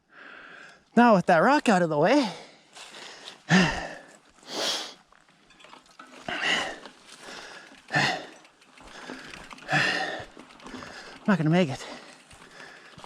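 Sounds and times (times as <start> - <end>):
person breathing hard: 0.1 - 0.8, 2.3 - 5.0, 6.3 - 13.0.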